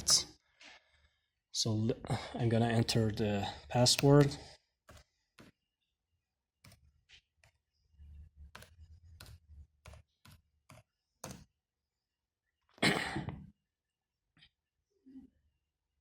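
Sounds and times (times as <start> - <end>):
laptop keyboard keys clicking: 8.5 - 11.5.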